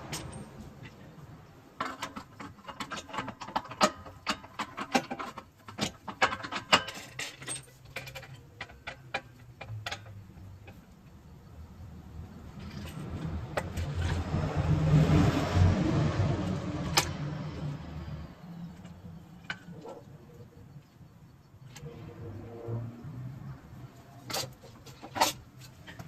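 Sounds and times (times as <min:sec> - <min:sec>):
metal tools clicking and clinking: 0:00.0 - 0:01.0, 0:01.8 - 0:10.9.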